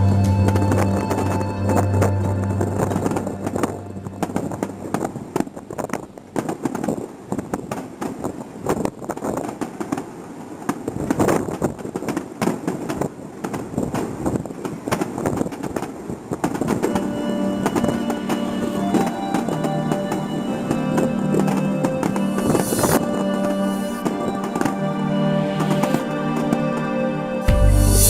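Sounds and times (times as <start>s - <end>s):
fireworks bursting and crackling: 0.0s - 28.0s.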